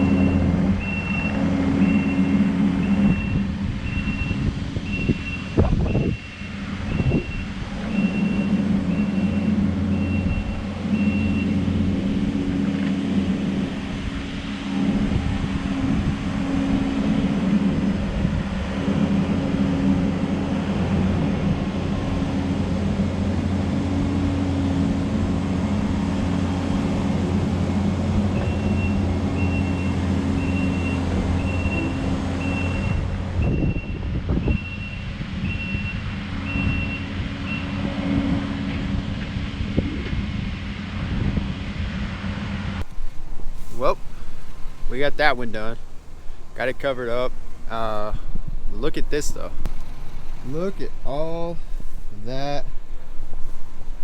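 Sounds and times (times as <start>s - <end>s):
backup alarm beeping: 0.0s - 11.7s, 28.4s - 37.8s
diesel engine running: 0.0s - 54.0s.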